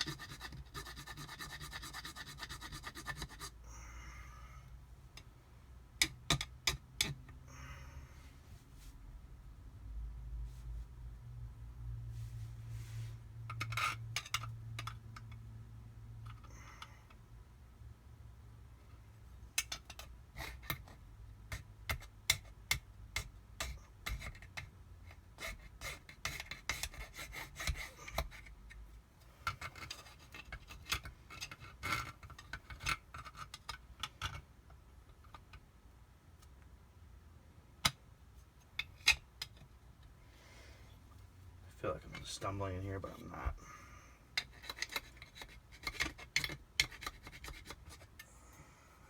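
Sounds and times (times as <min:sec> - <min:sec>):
hand file scraping metal: 0:00.0 - 0:03.6, 0:25.1 - 0:28.6, 0:44.4 - 0:48.2.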